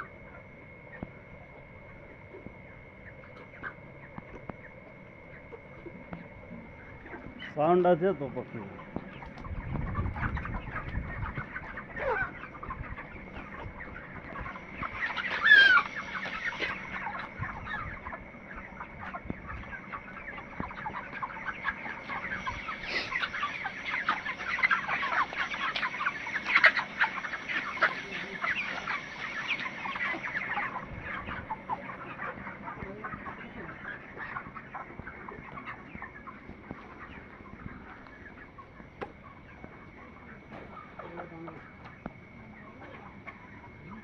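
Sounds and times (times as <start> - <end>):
chickens clucking and chirping: 0.0 - 44.0
loud chicken squawk: 9.0 - 42.0.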